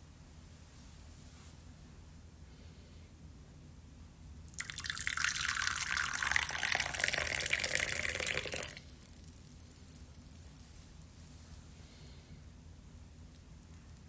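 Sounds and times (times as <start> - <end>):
tap water running: 4.6 - 8.8.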